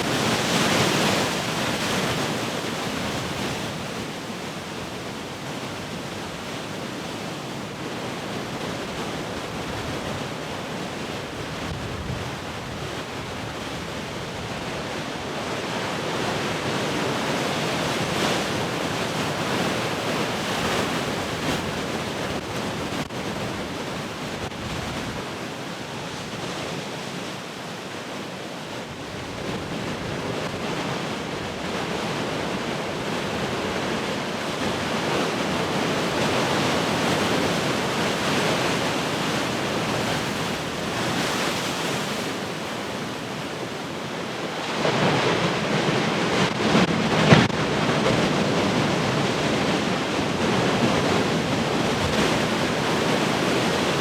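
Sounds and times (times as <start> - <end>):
ocean waves breaking: 28.8 - 54.0
big wave crashing: 44.2 - 54.0.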